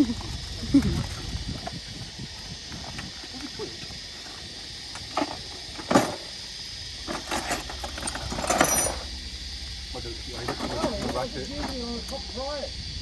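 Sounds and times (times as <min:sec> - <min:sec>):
small rattles: 0:00.0 - 0:09.2
steady high hiss: 0:00.0 - 0:13.0.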